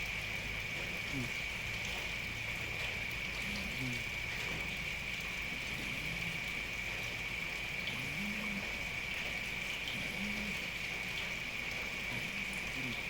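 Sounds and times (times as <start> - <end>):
rain hissing: 0.0 - 13.0
cat snoring: 3.4 - 4.1, 5.6 - 6.5, 7.9 - 8.8, 9.9 - 10.6, 12.1 - 13.0.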